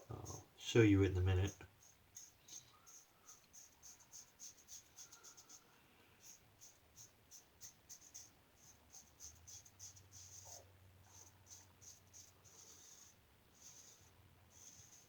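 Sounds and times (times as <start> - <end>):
low steady hum: 0.0 - 1.7
high-pitched scratchy ticks: 1.4 - 5.6.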